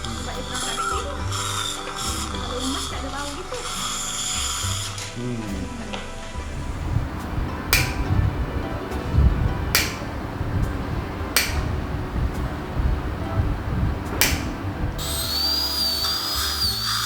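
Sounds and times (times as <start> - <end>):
low rumble: 6.4 - 15.3
dental instrument clicks: 7.1 - 8.3, 9.7 - 10.2, 11.4 - 11.7, 14.2 - 17.0
dental drill whine: 15.0 - 17.0.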